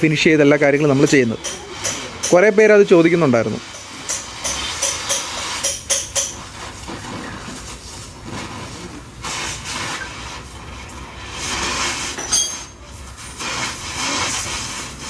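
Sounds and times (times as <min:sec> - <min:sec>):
hissing strokes on metal: 0:03.6 - 0:15.0.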